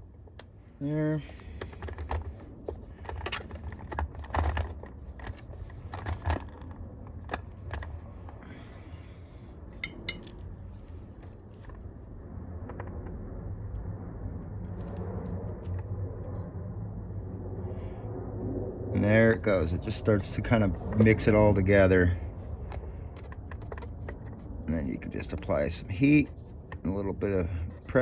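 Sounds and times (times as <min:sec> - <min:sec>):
low hum: 0:00.0 - 0:28.0
small metallic clicks and taps: 0:09.8 - 0:10.4.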